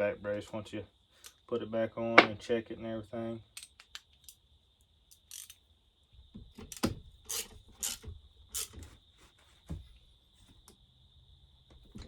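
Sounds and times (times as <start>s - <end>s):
tools scraping and knocking metal: 5.1s - 5.6s, 6.4s - 9.0s.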